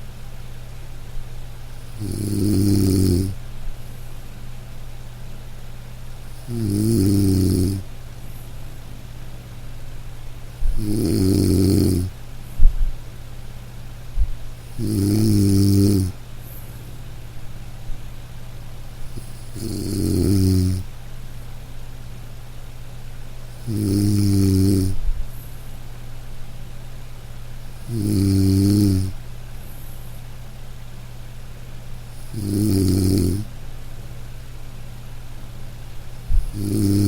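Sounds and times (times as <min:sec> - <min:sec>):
steady low hum: 0:00.0 - 0:37.0
person snoring loudly: 0:01.9 - 0:03.4, 0:06.3 - 0:07.8, 0:10.7 - 0:12.1, 0:14.7 - 0:16.2, 0:19.2 - 0:20.9, 0:23.6 - 0:25.0, 0:27.8 - 0:29.2, 0:32.2 - 0:33.5, 0:36.3 - 0:37.0.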